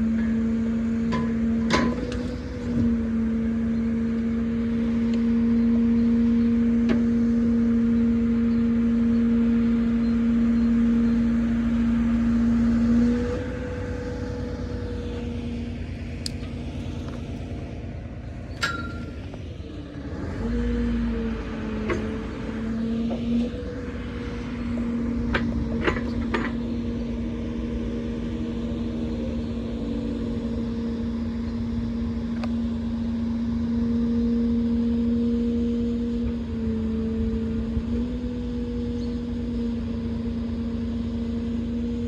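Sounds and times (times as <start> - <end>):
truck engine running: 0.0 - 42.0
crane hydraulics whining: 11.2 - 33.6.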